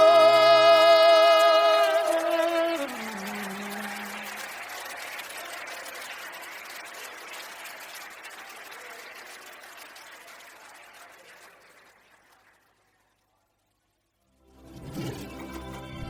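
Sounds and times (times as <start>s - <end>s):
singer holding a note: 0.0s - 4.4s
audience applause: 0.0s - 13.3s.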